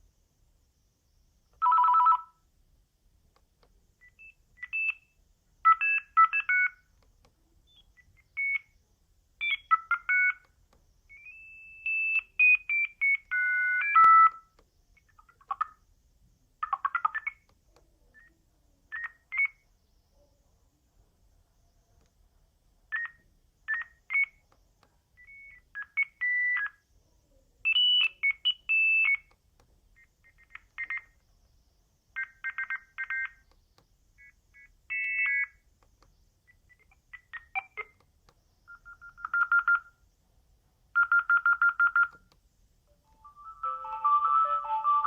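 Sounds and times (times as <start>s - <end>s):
electronic ringtone beeps: 38.7s - 39.9s, 43.0s - 45.0s.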